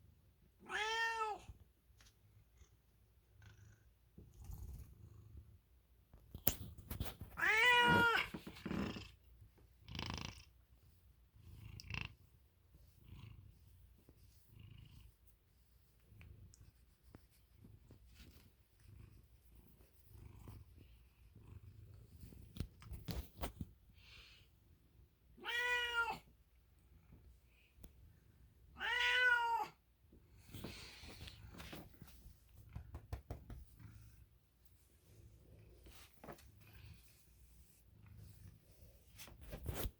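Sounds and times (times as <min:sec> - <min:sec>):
cat meowing: 0:00.6 - 0:01.5, 0:07.4 - 0:08.3, 0:25.4 - 0:26.2, 0:28.8 - 0:29.8
cat purring softly: 0:02.4 - 0:05.8, 0:08.3 - 0:25.0
soft rustling: 0:12.5 - 0:24.0, 0:30.2 - 0:39.9.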